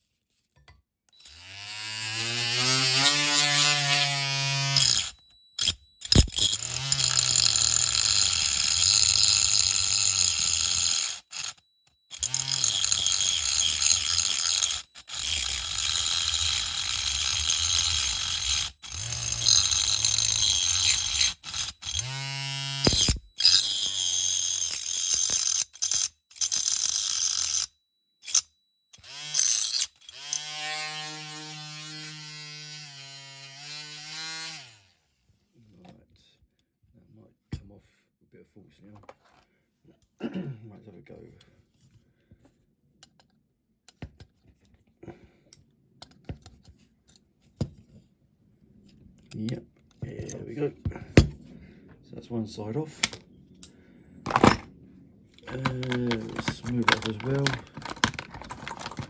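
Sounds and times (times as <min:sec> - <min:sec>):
electric power tool spinning: 0:01.2 - 0:27.7, 0:29.0 - 0:34.9, 0:55.4 - 0:59.0.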